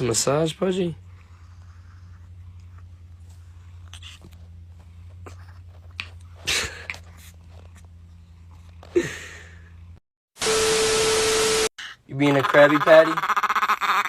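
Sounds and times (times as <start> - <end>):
low steady hum: 0.0 - 10.0.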